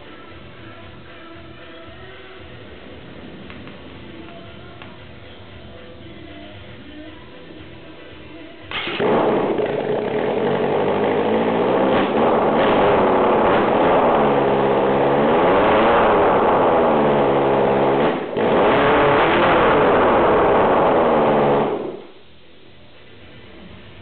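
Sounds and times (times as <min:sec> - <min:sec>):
motorcycle engine revving: 0:08.7 - 0:22.1.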